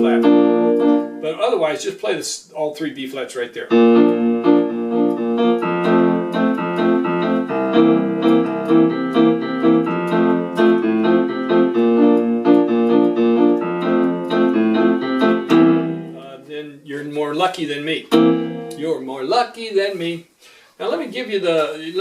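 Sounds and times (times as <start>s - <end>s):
electronic keyboard chords: 0.0s - 1.5s, 3.7s - 16.5s, 18.0s - 19.0s.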